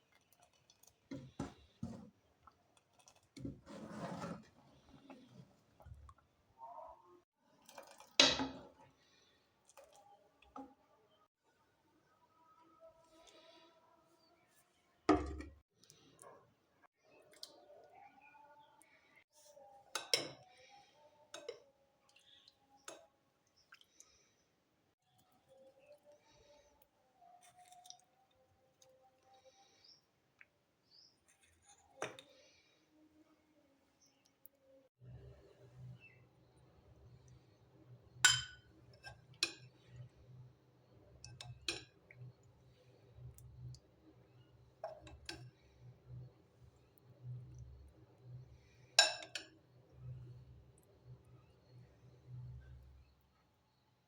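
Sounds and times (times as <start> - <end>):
utensil clinking against dishes: 38.3 - 39.7, 49.0 - 49.6.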